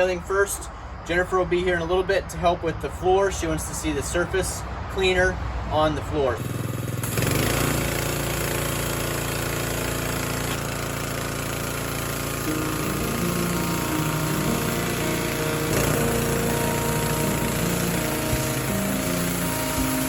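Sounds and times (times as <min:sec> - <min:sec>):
pressure washer engine running: 0:06.4 - 0:20.0
water jet hissing: 0:06.4 - 0:20.0.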